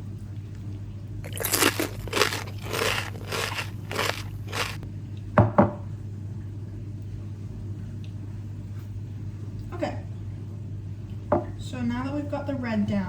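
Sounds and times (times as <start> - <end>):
steady low hum: 1.2 - 4.9
crinkling scraping rustles: 1.3 - 4.8.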